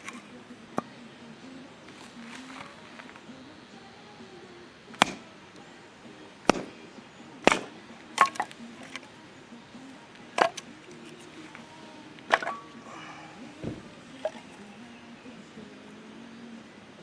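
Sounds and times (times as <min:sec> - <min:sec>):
axe chopping firewood: 0:04.9 - 0:05.3, 0:06.4 - 0:06.8, 0:07.4 - 0:09.0, 0:10.3 - 0:10.7, 0:12.2 - 0:12.8.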